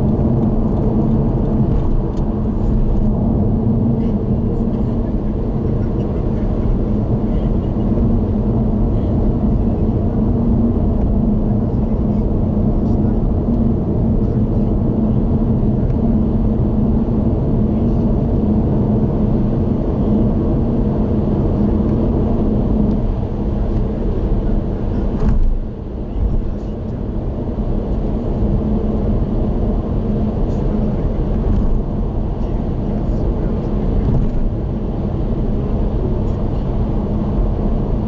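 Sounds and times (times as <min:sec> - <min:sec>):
car engine hum: 0:00.0 - 0:38.0
road and tyre rumble: 0:00.0 - 0:38.0.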